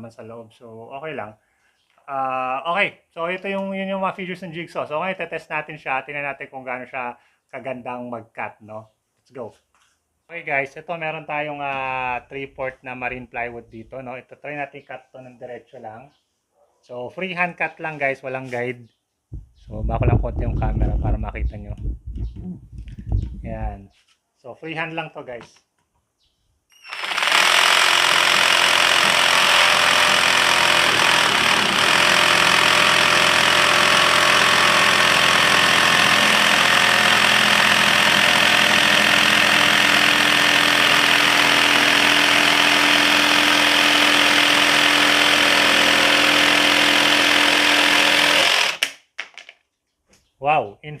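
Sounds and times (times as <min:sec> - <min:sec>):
jigsaw sawing plywood: 0:26.8 - 0:49.0.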